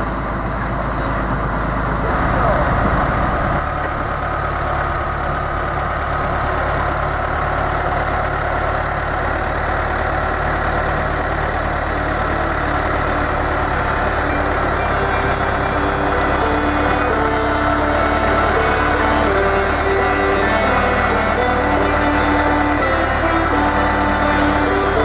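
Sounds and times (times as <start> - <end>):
engine droning: 0.0 - 25.0
steady tones: 11.8 - 25.0.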